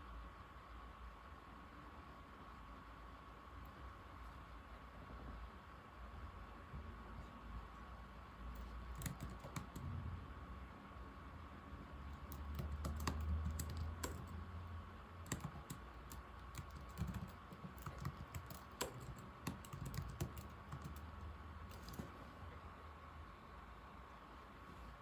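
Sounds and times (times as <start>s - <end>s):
laptop keyboard typing: 8.5s - 10.0s, 12.1s - 22.2s.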